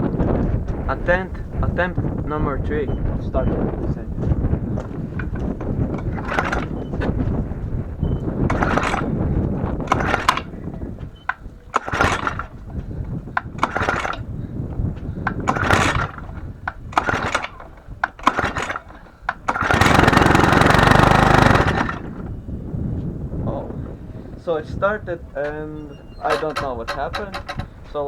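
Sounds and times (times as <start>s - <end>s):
recoil starter pulls: 4.7s - 22.5s, 25.1s - 28.0s
lawnmower engine running: 4.7s - 22.6s, 25.5s - 28.0s.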